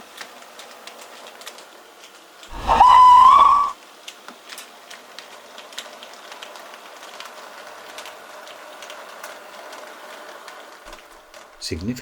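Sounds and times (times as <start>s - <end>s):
steam locomotive whistle: 2.5s - 3.7s.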